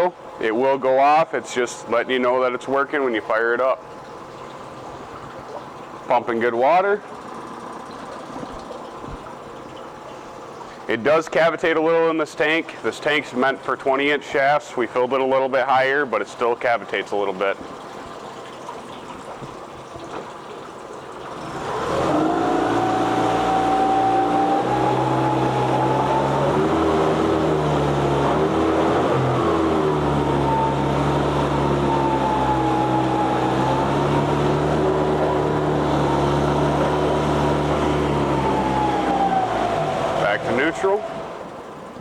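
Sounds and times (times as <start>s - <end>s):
outboard motor running: 0.0s - 42.0s
propeller cavitating in water: 3.8s - 11.4s, 16.2s - 42.0s.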